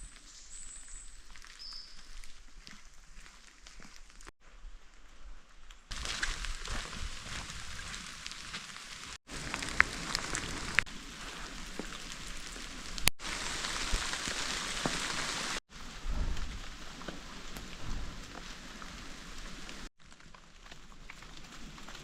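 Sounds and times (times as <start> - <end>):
steady rain falling: 5.9 - 22.0.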